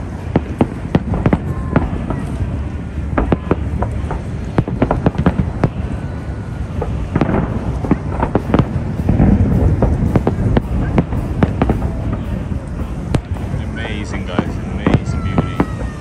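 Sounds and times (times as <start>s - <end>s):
firework bangs and cracks: 0.0s - 16.0s
low rumble of booms: 0.0s - 16.0s.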